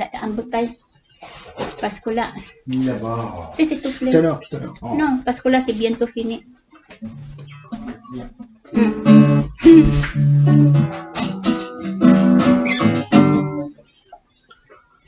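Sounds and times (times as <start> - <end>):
acoustic guitar strumming: 6.8 - 13.9.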